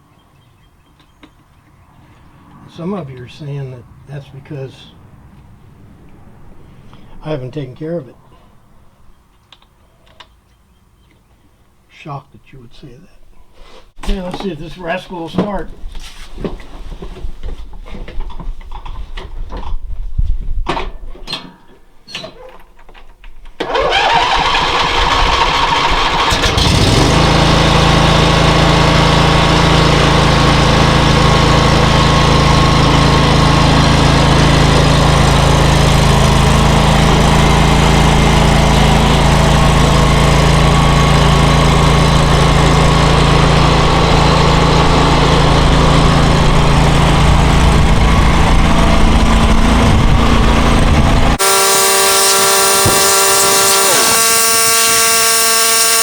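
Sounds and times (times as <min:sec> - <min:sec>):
lawn tractor starter cranking: 0:23.6 - 0:45.3, 0:51.2 - 0:56.0
tractor engine running: 0:23.6 - 0:56.0.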